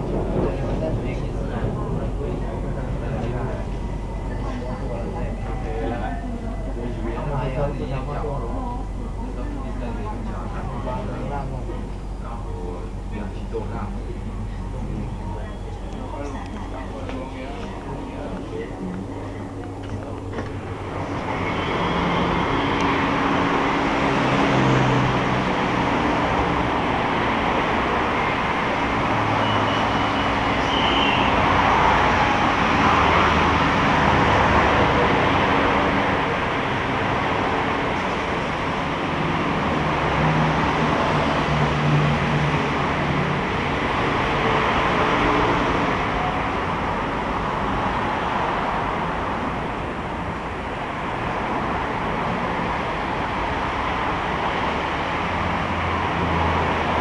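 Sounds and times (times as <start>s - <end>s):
low motor hum: 0.0s - 29.4s
train carriage rolling rumble: 0.0s - 29.4s.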